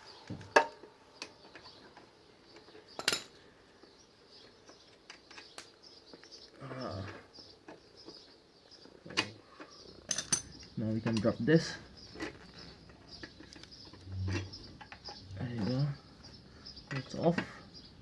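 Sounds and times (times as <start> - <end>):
low mumbling voice: 6.6 - 7.3.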